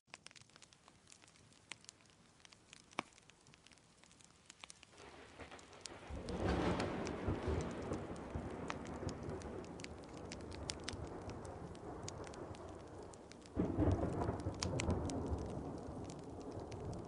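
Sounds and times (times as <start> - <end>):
crackles and ticks: 0.0 - 17.0
steady rain: 0.1 - 17.0
low thunder roll: 5.0 - 17.0.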